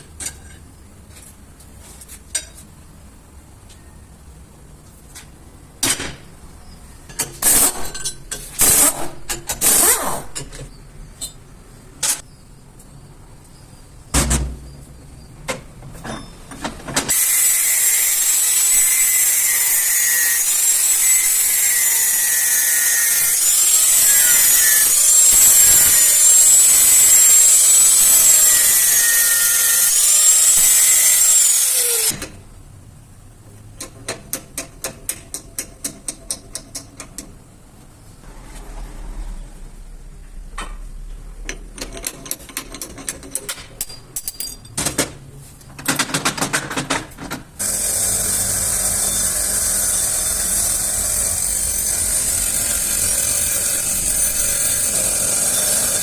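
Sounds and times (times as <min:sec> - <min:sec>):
power tool whirring: 0:17.1 - 0:32.2, 0:47.6 - 0:56.0.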